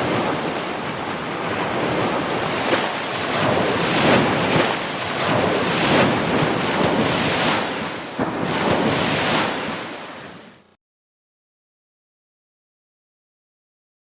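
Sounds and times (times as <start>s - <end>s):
ocean surf washing in: 0.0s - 10.7s.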